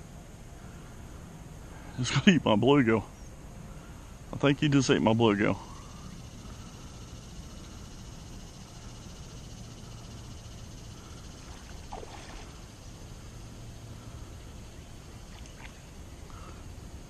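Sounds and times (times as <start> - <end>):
faint hiss: 0.0 - 17.0
low hum: 0.0 - 17.0
faint chirp: 4.9 - 17.0.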